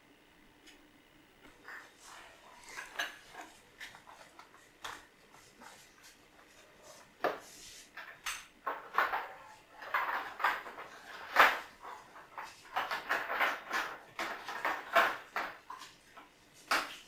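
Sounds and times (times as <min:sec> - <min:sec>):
dishes clinking and clattering: 0:01.6 - 0:05.0, 0:08.0 - 0:16.0.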